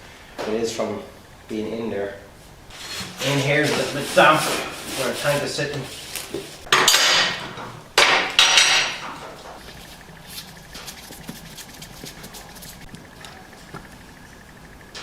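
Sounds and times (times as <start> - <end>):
metallic clattering: 5.5 - 15.0.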